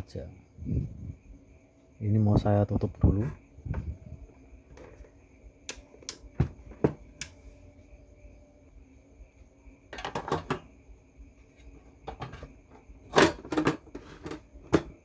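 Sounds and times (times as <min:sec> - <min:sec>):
metal case clattering: 0:13.1 - 0:15.0.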